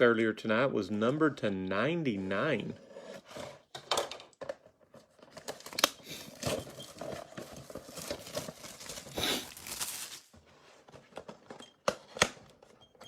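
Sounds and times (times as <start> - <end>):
packaging crinkling and tearing: 5.3 - 10.3.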